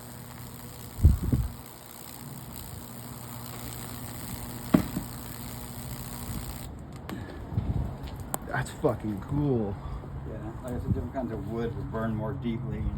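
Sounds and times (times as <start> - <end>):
electric arc hissing: 0.0 - 6.7
sharp electric snap: 0.0 - 6.7
transformer humming: 0.0 - 6.7.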